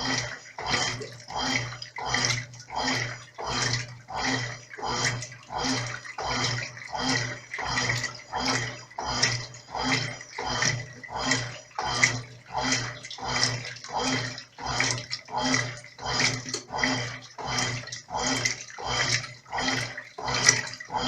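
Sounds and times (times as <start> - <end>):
washing machine agitating: 0.0 - 21.0.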